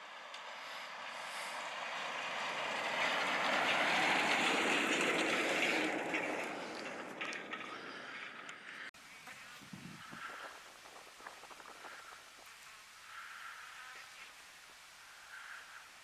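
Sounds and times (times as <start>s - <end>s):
vehicle passing: 0.0s - 8.9s.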